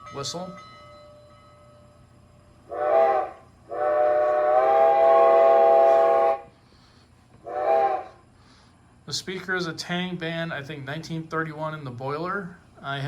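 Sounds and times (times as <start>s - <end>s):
steam locomotive whistle: 2.7s - 6.6s, 7.4s - 8.2s.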